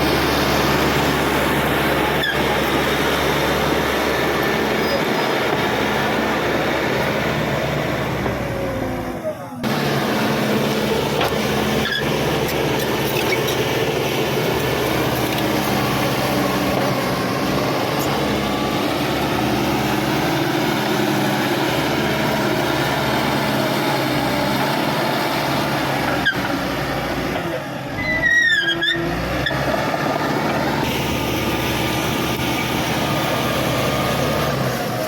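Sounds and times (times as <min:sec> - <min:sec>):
bulldozer diesel engine running: 0:00.0 - 0:35.0.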